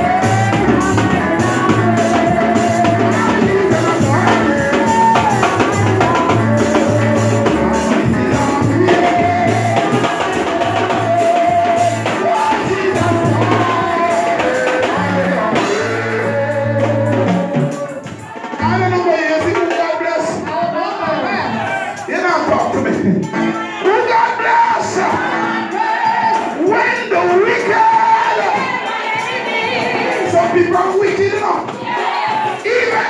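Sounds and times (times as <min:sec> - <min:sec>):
bass line: 0:00.0 - 0:19.4
drums: 0:00.0 - 0:33.0
gospel singing: 0:00.0 - 0:33.0.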